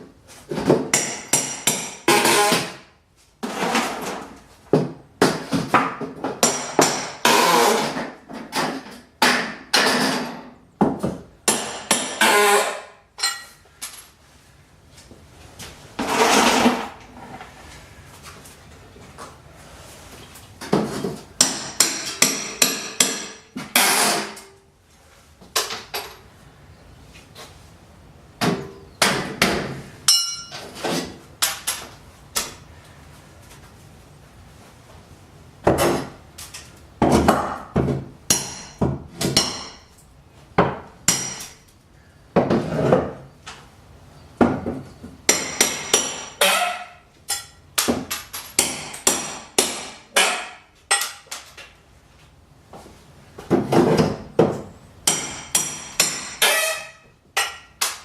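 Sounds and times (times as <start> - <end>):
hammer driving nails: 21.4 - 24.5, 45.3 - 51.4, 53.7 - 58.0
high ringing: 30.1 - 30.6.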